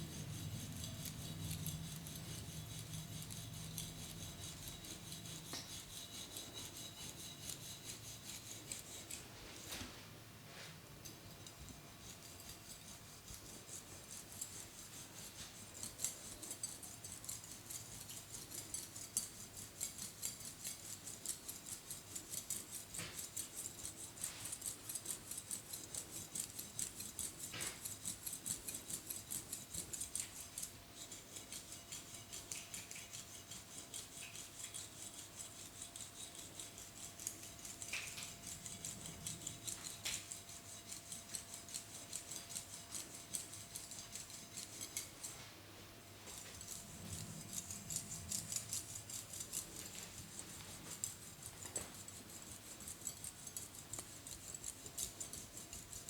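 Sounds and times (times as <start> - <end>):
massager rustling through hair: 43.7 - 53.1.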